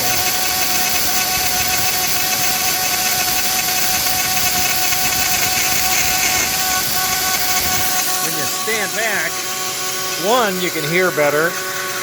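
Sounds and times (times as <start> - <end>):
rotary tool milling metal: 0.0 - 12.0.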